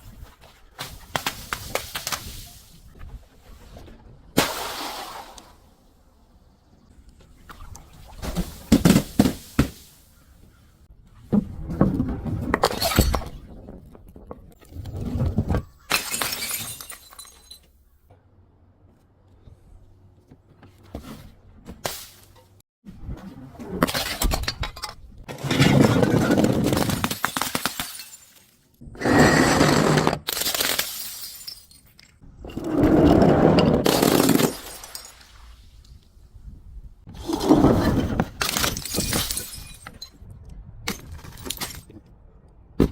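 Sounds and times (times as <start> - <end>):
glass breaking and crunching: 15.8 - 17.8, 25.6 - 28.6, 30.2 - 32.2, 33.8 - 35.3, 38.4 - 40.2.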